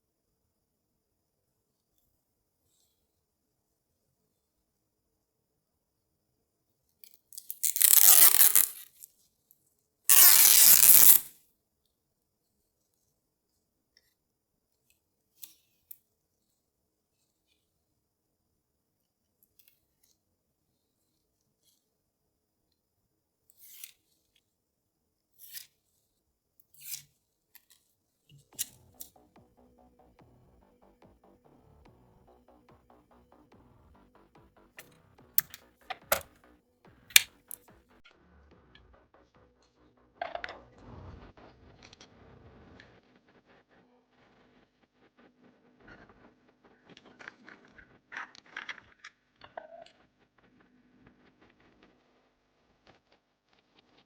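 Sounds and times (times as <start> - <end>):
rustling scrape: 7.5 - 8.8.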